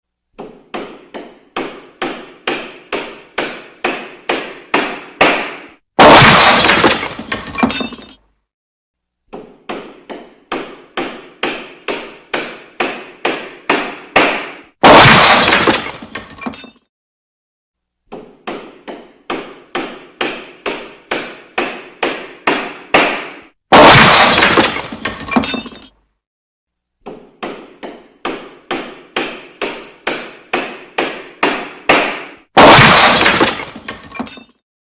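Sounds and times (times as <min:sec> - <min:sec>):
loud crash of something breaking: 0:06.0 - 0:07.8, 0:14.8 - 0:16.4, 0:23.7 - 0:25.6, 0:32.6 - 0:34.3.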